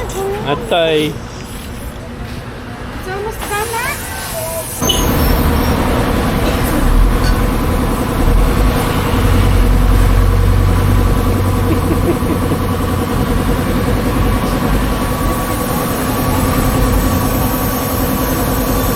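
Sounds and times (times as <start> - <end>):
vehicle engine idling: 4.8 - 18.9.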